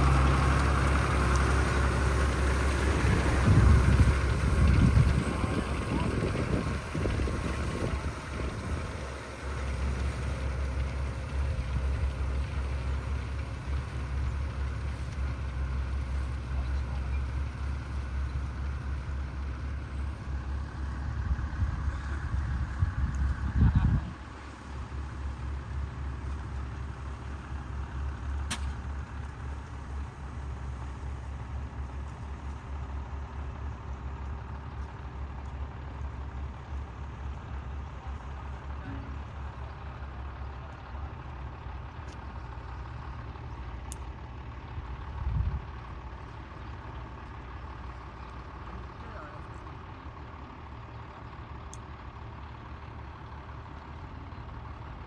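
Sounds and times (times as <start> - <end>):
machine motor rumbling: 0.0 - 24.8
engine rumbling: 0.0 - 55.0.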